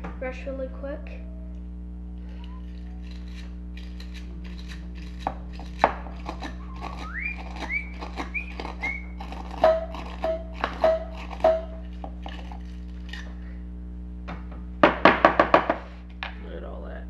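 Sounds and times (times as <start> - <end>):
steady low hum: 0.0 - 17.0
wire brush scrubbing metal: 0.2 - 14.0
whistle-like squeaks: 2.1 - 4.0, 5.6 - 11.9.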